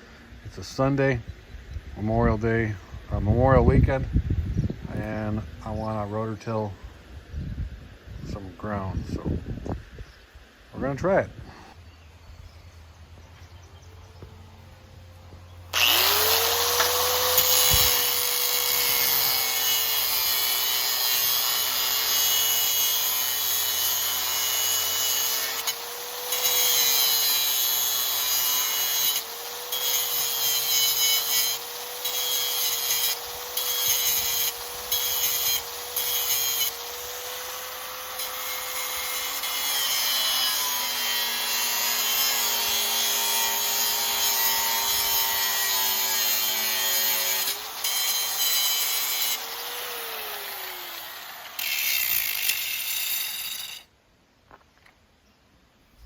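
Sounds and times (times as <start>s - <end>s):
angle grinder cutting steel: 15.7s - 53.9s.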